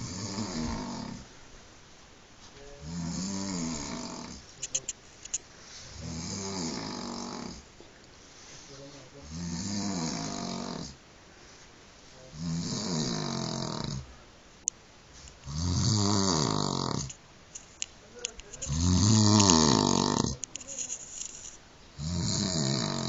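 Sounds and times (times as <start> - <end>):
man snoring loudly: 0.0 - 1.2, 2.8 - 4.4, 6.0 - 7.6, 9.2 - 11.0, 12.3 - 14.0, 15.5 - 17.1, 18.7 - 20.4, 22.0 - 23.0.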